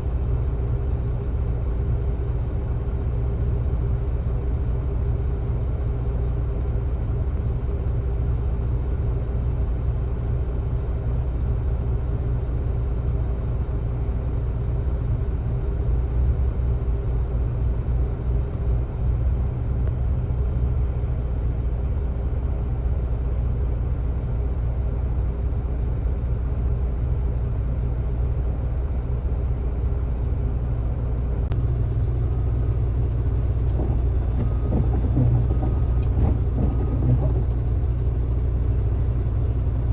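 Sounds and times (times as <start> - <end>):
heavy diesel engine rumbling: 15.2 - 39.9
steady hum: 28.9 - 39.9.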